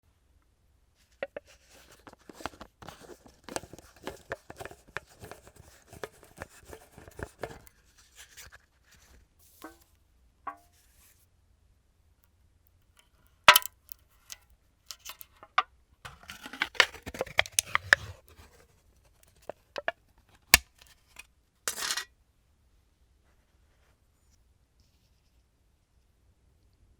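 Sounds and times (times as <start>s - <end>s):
jar lid crackling clicks: 13.5s - 13.7s, 16.4s - 18.0s
seal tearing and crinkling: 16.1s - 18.0s.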